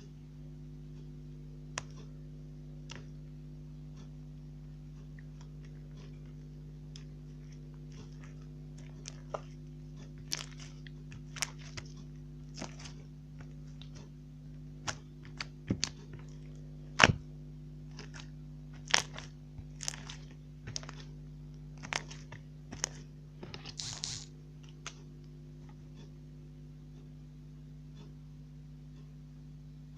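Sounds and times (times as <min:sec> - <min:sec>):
steady low hum: 0:00.0 - 0:29.9
slime squeezed popping: 0:23.6 - 0:24.3.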